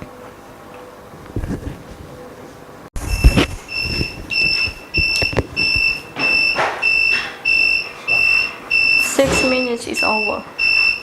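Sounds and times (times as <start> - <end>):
high-pitched buzzer beeping: 3.0 - 11.0.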